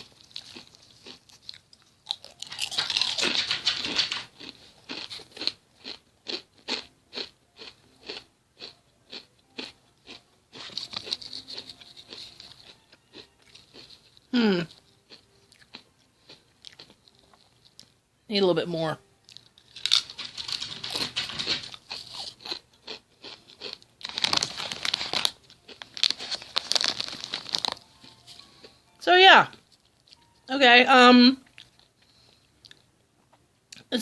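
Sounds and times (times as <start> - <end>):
chewing: 0.0 - 17.9, 19.2 - 28.8, 31.4 - 32.9
potato chip crunching: 0.0 - 17.9, 19.3 - 28.2.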